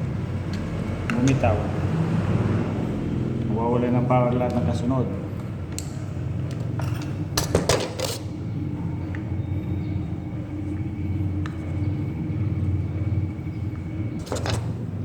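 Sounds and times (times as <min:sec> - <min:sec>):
steady low rumble: 0:08.3 - 0:15.0.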